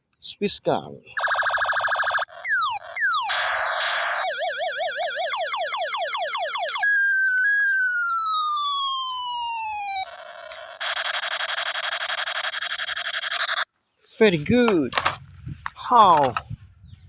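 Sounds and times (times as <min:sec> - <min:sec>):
toy gun warbling siren: 0:01.2 - 0:13.7
long falling electronic tone: 0:02.0 - 0:11.0.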